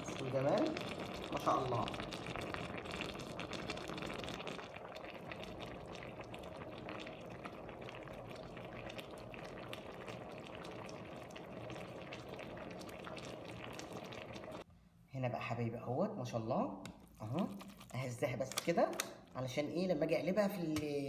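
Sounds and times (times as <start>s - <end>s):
pot bubbling at the boil: 0.0s - 14.7s.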